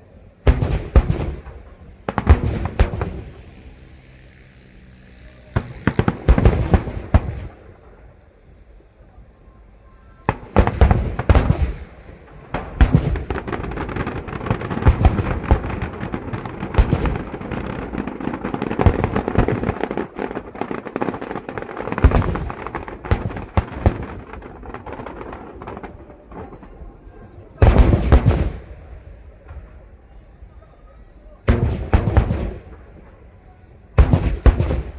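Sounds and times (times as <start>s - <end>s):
fireworks bursts and booms: 0.0s - 34.9s
fireworks crackling: 0.0s - 34.9s.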